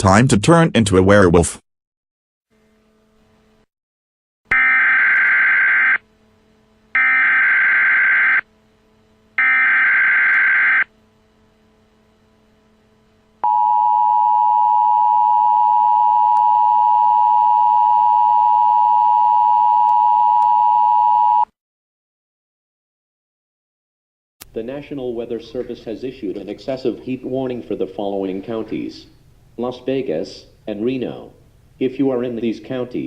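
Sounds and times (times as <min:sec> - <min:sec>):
warbling data tone bursts: 0:09.4 - 0:10.9.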